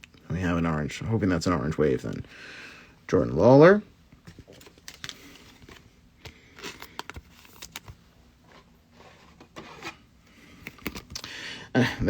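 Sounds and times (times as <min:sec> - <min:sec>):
trading cards being flipped: 0:04.3 - 0:10.0.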